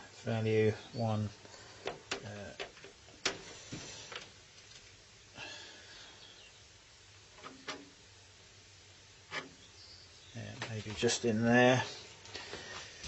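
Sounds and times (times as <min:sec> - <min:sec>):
rustle of handled parts: 0:01.4 - 0:05.0.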